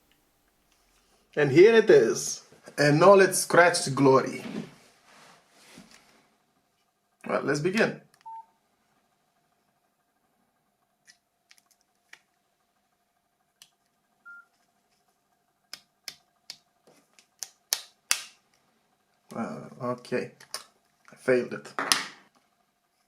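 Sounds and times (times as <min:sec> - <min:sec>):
plastic clicks and snaps: 0:15.7 - 0:18.4.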